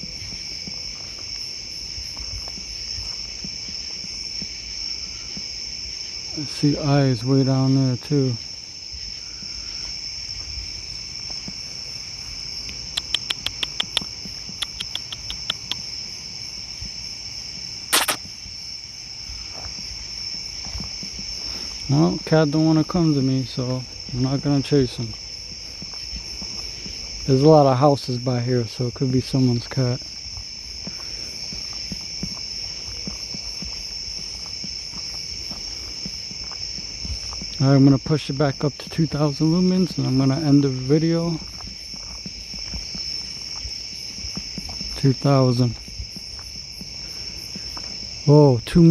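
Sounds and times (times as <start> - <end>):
crickets chirping: 0.0 - 48.9
sharp clicks: 12.7 - 15.8, 17.9 - 18.2
loud burst of noise: 17.9 - 18.2
faint short ticks: 18.0 - 18.2.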